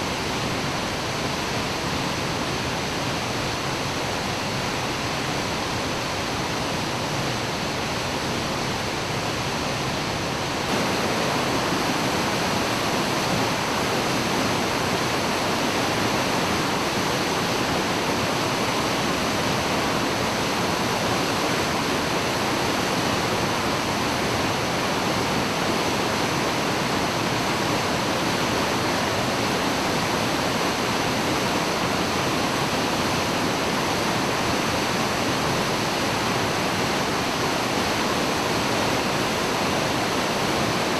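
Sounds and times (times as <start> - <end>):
waterfall crashing: 0.0 - 40.9.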